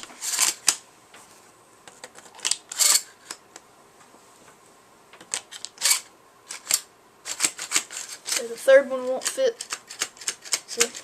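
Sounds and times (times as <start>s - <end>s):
shotgun shells loading clicks: 5.2s - 8.4s, 9.2s - 10.9s.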